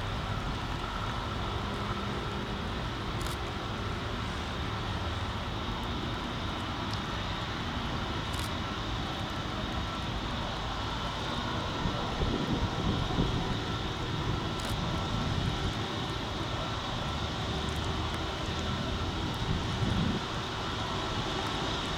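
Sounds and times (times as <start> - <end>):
jet engines running: 0.0 - 21.9.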